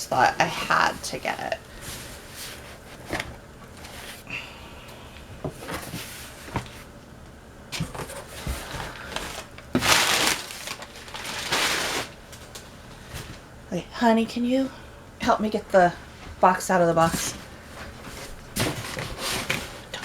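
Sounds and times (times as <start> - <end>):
cardboard scraping: 0.6 - 4.3, 5.5 - 6.9, 7.8 - 12.2, 17.0 - 20.0
cardboard box knocks and rustles: 17.8 - 19.8.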